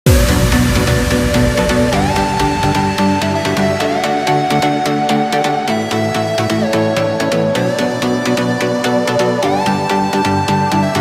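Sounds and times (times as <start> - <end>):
deep falling bass note: 0.1 - 5.1
electronic music with steady beat: 0.1 - 11.0.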